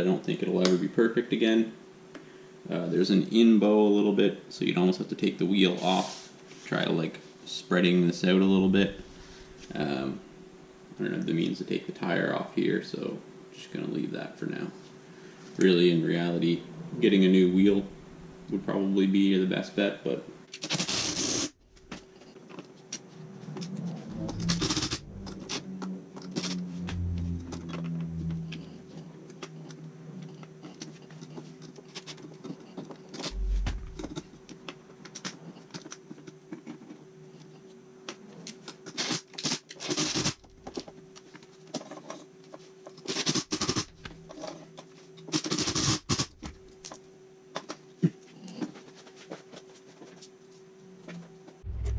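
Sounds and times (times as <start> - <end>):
faint steady hum: 0.0 - 38.8
dull thumps: 33.3 - 34.2.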